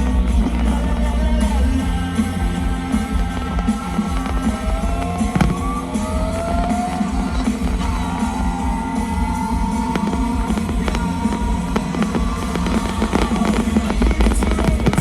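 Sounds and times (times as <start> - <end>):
rock music over loudspeakers: 0.0 - 15.0
firework cracks: 3.0 - 15.0.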